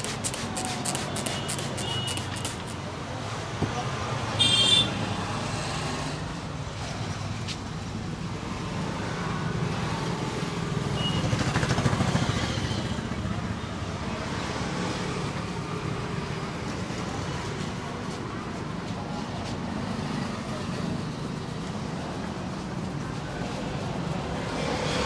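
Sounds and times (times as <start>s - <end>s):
road traffic rumble: 0.0s - 25.0s
motor vehicle passing: 8.6s - 18.2s, 19.7s - 25.0s.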